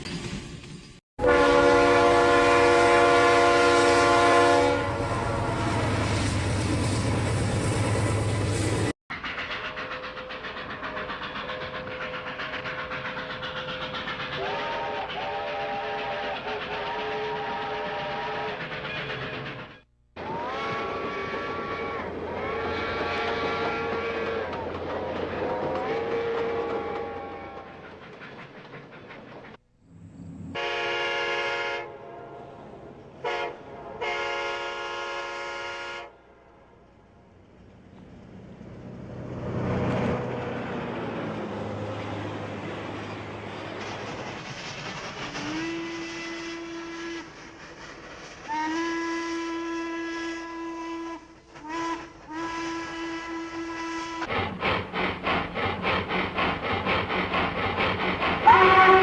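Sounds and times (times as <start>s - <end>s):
train running: 0.0s - 59.0s
train whistle: 1.2s - 6.6s, 14.3s - 18.7s, 20.2s - 24.7s, 25.4s - 27.8s, 30.4s - 32.6s, 33.2s - 36.3s, 45.3s - 47.8s, 48.4s - 54.5s, 58.4s - 59.0s.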